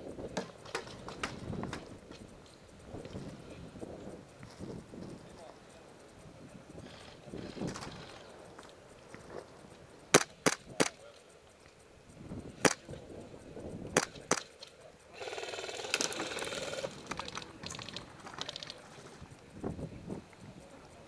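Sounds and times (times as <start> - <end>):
airsoft gun shots: 10.1 - 11.0, 12.6 - 12.9, 14.0 - 14.5.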